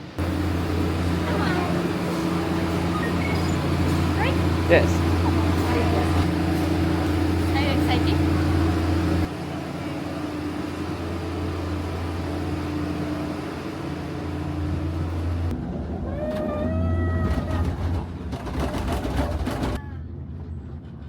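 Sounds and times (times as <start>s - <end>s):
low mechanical hum: 0.0s - 21.0s
gliding squeal: 2.8s - 4.0s.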